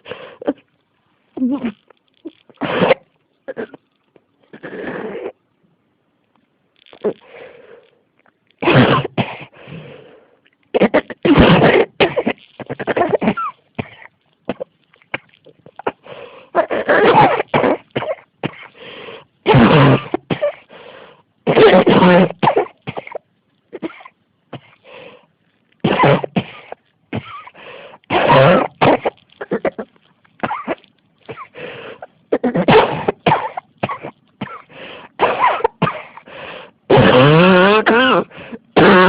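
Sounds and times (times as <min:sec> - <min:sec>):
woman coughing: 0:01.4 - 0:01.8, 0:08.6 - 0:09.5, 0:10.8 - 0:16.0, 0:16.6 - 0:18.7, 0:19.5 - 0:20.7, 0:21.5 - 0:23.2, 0:25.9 - 0:31.6, 0:32.3 - 0:36.3, 0:36.9 - 0:39.0.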